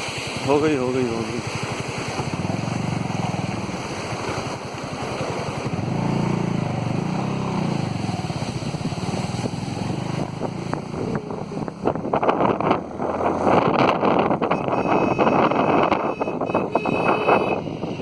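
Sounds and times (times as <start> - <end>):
vehicle engine running: 1.5 - 17.9
wind buffeting microphone: 5.6 - 18.0.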